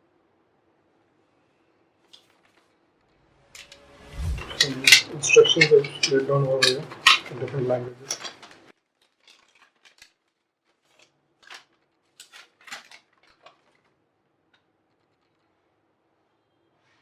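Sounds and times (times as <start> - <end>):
packaging rustling and clicking: 8.0 - 13.9.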